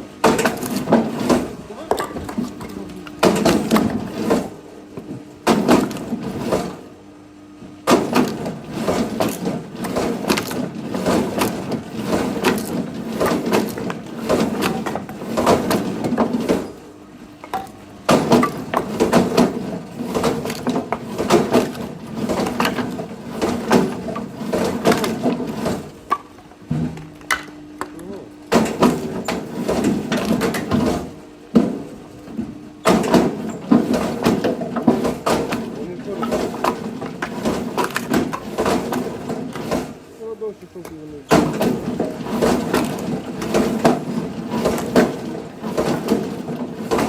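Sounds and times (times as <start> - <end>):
firewood knocking and clattering: 7.9 - 16.8, 17.4 - 40.0, 41.3 - 47.0.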